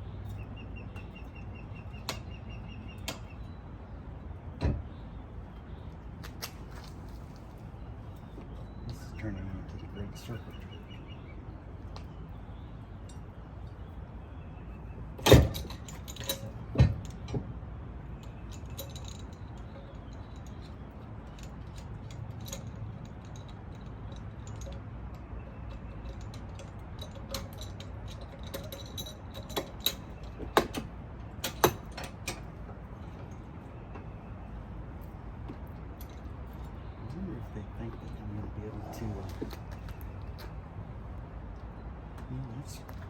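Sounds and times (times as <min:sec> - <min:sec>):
small jangling clicks: 0:15.2 - 0:17.4, 0:18.1 - 0:33.7, 0:35.0 - 0:37.0
metal clanks and clinks: 0:15.2 - 0:34.2, 0:35.0 - 0:39.8.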